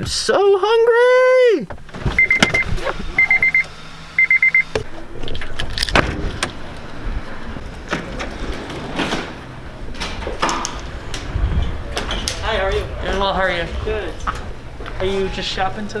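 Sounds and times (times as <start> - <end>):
steady low hum: 1.7 - 16.0
car warning chime beeping: 2.1 - 4.9.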